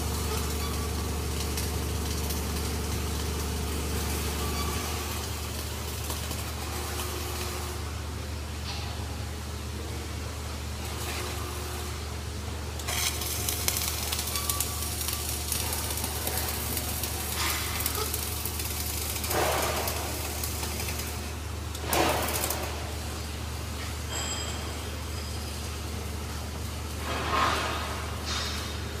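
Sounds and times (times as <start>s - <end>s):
welding arc crackling: 0.0s - 8.0s, 12.6s - 23.8s.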